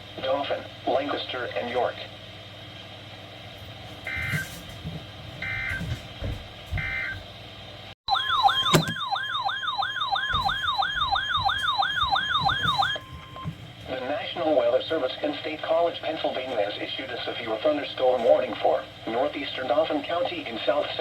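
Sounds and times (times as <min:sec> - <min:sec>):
siren-like wail: 0:08.1 - 0:13.5
steady attention tone: 0:08.1 - 0:13.5.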